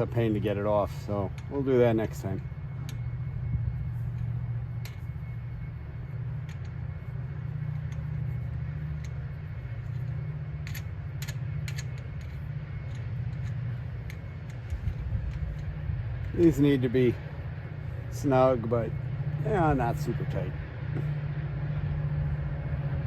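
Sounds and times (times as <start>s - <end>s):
steady low rumble: 0.0s - 23.0s
light metal clicks and taps: 9.8s - 16.4s.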